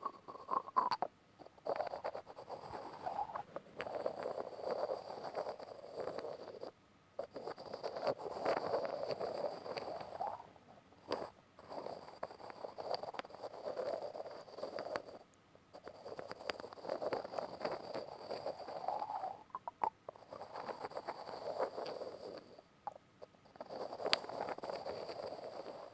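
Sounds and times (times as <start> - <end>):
close-up grinding and scratching: 0.0 - 22.6, 23.2 - 25.9.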